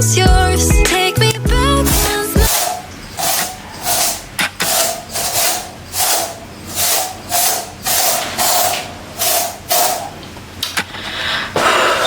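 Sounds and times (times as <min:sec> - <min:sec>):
brush scrubbing strokes: 0:01.8 - 0:10.2.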